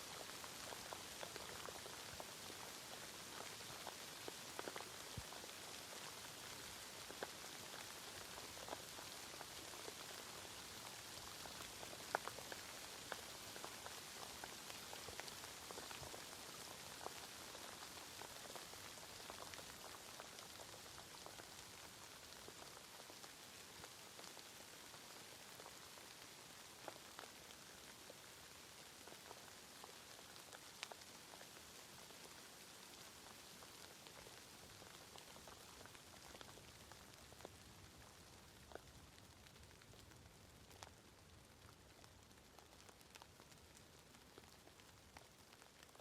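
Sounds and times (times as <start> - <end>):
light rain hiss: 0.0 - 46.0
raindrops ticking: 0.0 - 46.0.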